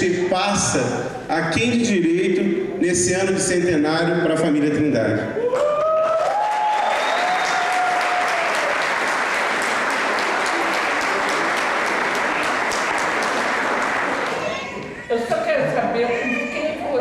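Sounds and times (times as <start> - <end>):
audience applauding: 5.6 - 14.8.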